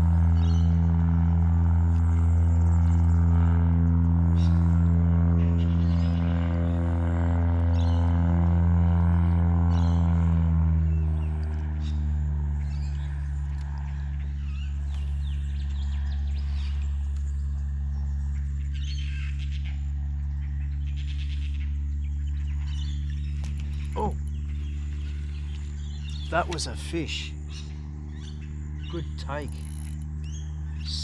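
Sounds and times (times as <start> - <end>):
steady low hum: 0.0 - 31.0
birds chirping: 10.9 - 31.0.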